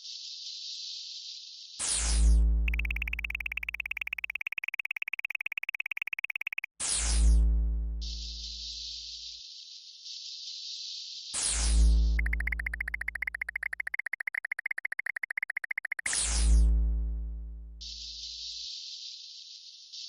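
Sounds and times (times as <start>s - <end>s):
rapid pulsing high-pitched tone: 2.7s - 6.8s, 12.1s - 16.2s.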